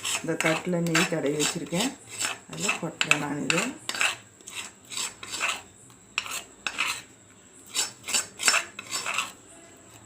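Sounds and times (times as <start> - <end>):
spoon scraping cooking pan: 0.0 - 10.0.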